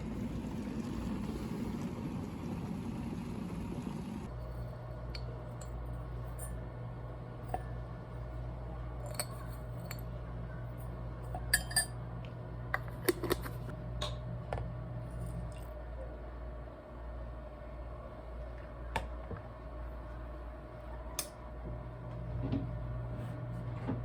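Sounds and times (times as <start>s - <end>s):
steady low hum: 0.0s - 24.0s
tableware clinking: 11.4s - 12.0s.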